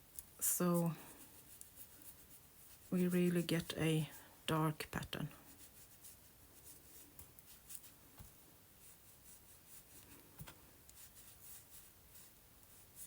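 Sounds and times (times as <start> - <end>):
scratchy rubbing on paper: 0.4 - 4.3, 5.2 - 13.0.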